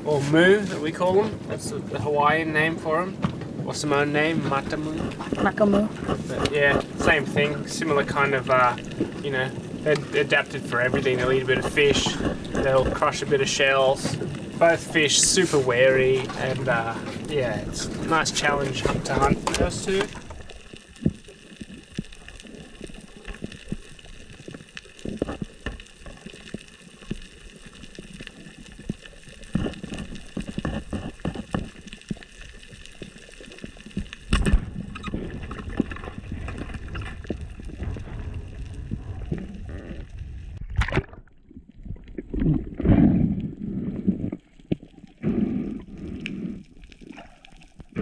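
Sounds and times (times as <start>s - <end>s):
water gurgling and sloshing: 0.0s - 48.0s
steady hiss: 6.2s - 24.7s.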